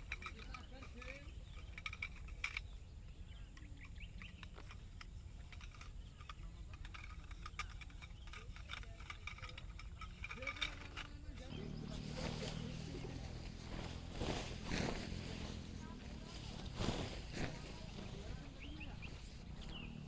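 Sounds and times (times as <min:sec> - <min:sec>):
tent fabric and poles rustling: 0:00.0 - 0:20.0
steady low rumble: 0:11.5 - 0:20.0.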